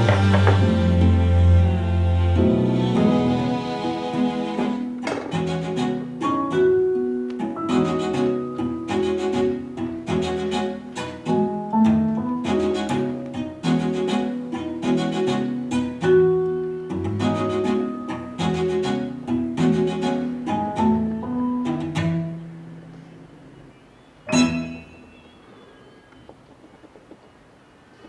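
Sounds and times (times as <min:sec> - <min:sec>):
string instrument music: 0:00.0 - 0:22.9, 0:24.3 - 0:25.3.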